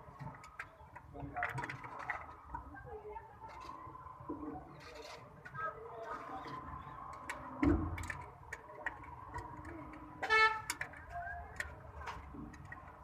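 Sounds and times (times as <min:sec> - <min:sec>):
car horn: 0:10.2 - 0:10.7.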